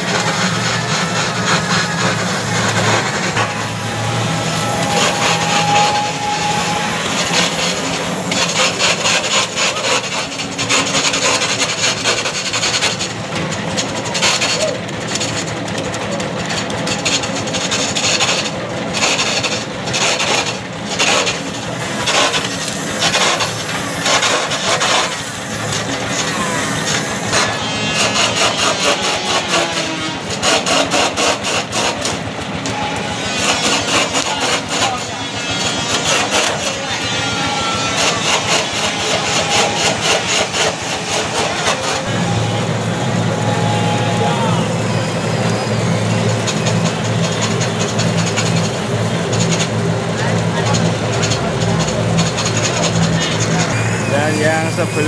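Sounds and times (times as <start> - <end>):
lathe tool rasping wood: 0.0 - 55.0.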